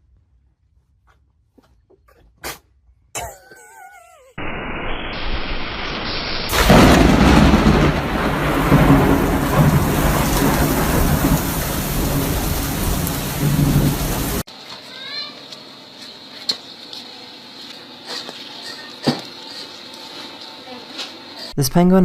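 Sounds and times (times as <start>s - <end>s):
heavy rain: 4.4s - 14.5s
thunder rumble: 4.4s - 14.5s.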